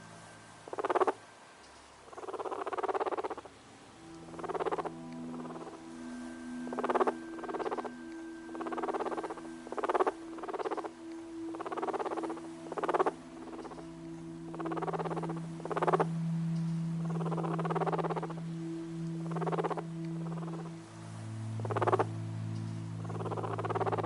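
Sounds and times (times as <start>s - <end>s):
steady low tones: 0.0s - 24.0s
guinea pig purring: 0.7s - 1.2s, 2.1s - 3.5s, 4.3s - 5.8s, 8.5s - 10.9s, 11.5s - 13.8s, 14.5s - 16.1s, 17.2s - 18.4s, 19.3s - 20.6s, 21.6s - 22.1s, 23.2s - 24.0s.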